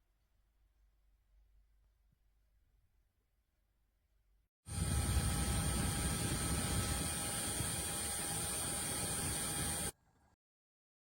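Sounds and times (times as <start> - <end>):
handheld fan whining: 4.7 - 9.9.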